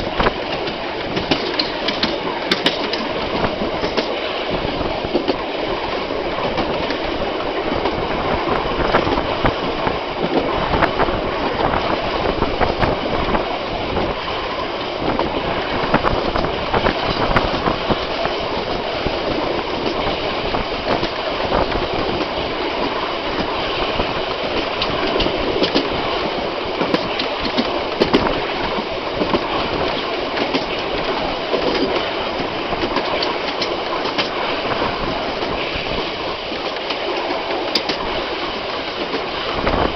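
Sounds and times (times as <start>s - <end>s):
train wheels rumbling on rails: 0.0s - 39.9s
irregular clicks and knocks: 0.5s - 3.1s.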